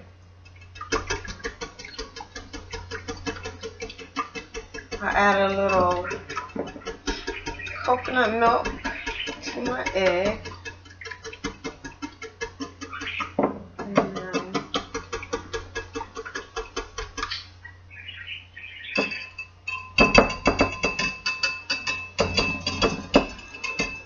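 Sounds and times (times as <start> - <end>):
fork beating eggs in a bowl: 0.0 - 17.7, 18.6 - 24.0
light ringing: 18.9 - 24.0.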